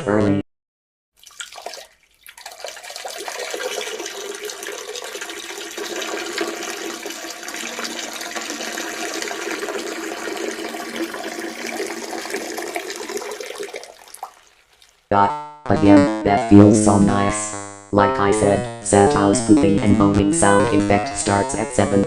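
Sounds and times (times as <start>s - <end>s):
urine splashing into toilet water: 1.1s - 15.1s.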